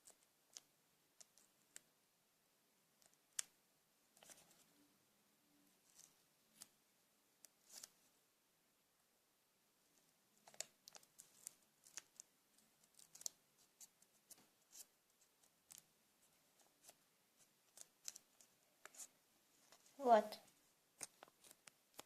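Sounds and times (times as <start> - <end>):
paper and sticky tape handling: 10.4 - 15.9, 17.7 - 19.1.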